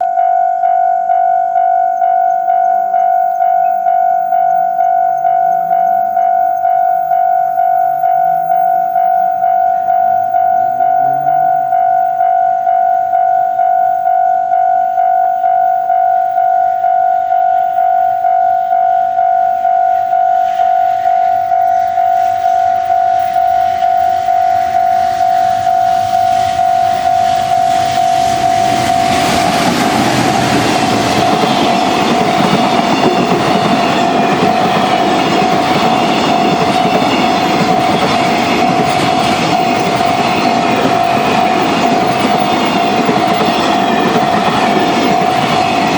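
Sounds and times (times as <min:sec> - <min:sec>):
freight train passing: 0:00.0 - 0:45.9
level-crossing alarm bell ringing: 0:00.0 - 0:45.9
wheels clattering over rail joints: 0:22.2 - 0:45.9.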